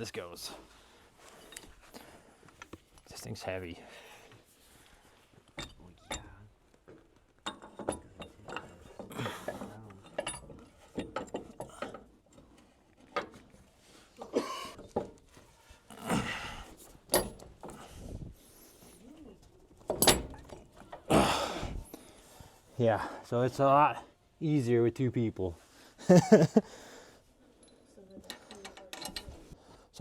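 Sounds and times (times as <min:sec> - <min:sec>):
metal clicks clanks and knocks: 0:05.5 - 0:13.6, 0:14.2 - 0:15.3, 0:17.0 - 0:17.9, 0:19.7 - 0:21.1, 0:27.6 - 0:29.4.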